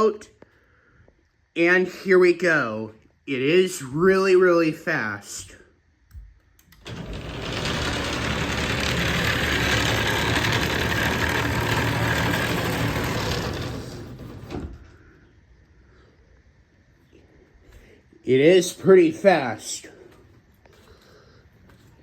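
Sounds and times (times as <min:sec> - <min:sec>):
garage door opener rumble: 0:06.6 - 0:15.1.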